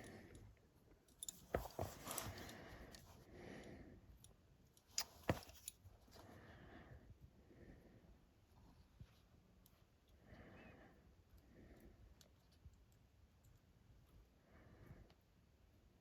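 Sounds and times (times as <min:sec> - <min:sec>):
soft scraping on silver: 0:01.2 - 0:03.3.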